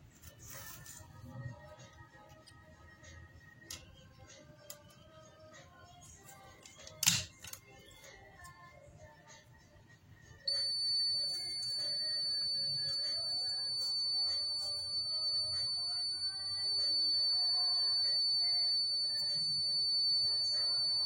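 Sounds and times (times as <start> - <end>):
faint background music: 0.0 - 21.0
high-pitched electronic beep: 10.4 - 21.0.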